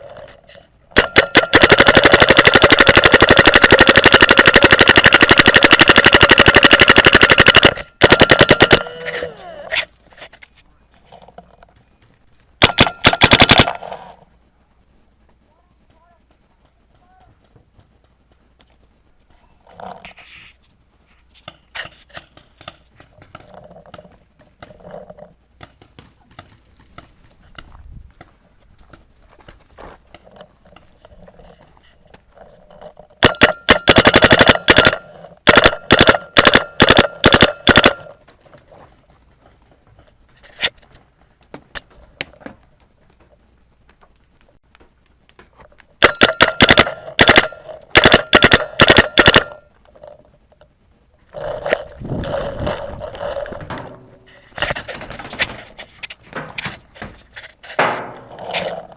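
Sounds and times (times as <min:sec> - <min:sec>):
scattered clicks and knocks: 0:00.1 - 0:08.9, 0:21.3 - 0:31.1, 0:33.2 - 0:50.8
paintball marker firing: 0:33.2 - 0:38.2, 0:46.0 - 0:49.6.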